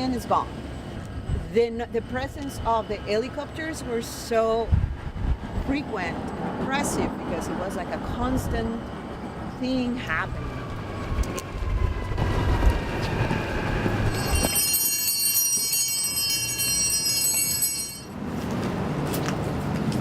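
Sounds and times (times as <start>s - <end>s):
high metallic ringing squeal: 13.8s - 18.2s.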